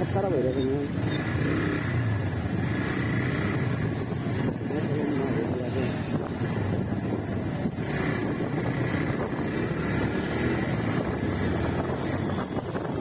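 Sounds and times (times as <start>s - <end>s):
motorcycle running: 0.0s - 13.0s
wind rushing over microphone: 2.0s - 13.0s.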